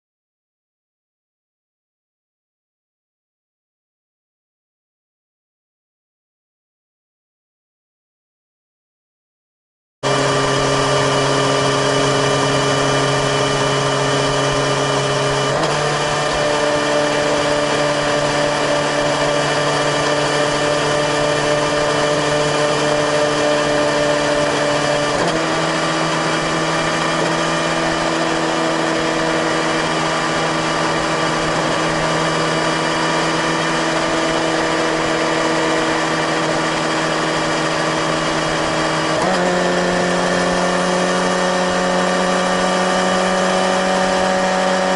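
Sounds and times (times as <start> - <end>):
motorcycle engine cruising: 10.0 - 44.9.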